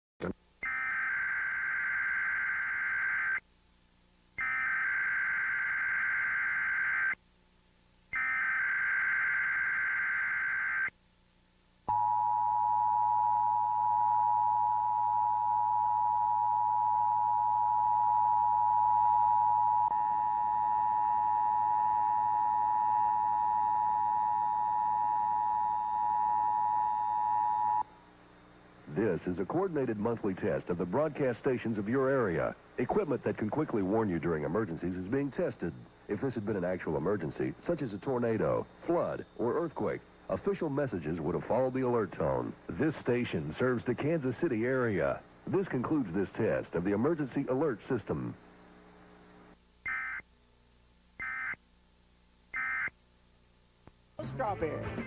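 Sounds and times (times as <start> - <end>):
steady two-tone attention signal: 11.9 - 27.9.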